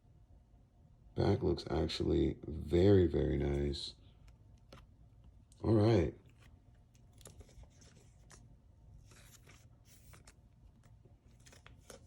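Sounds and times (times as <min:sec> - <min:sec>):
cards sliding against cards: 0:06.3 - 0:12.0.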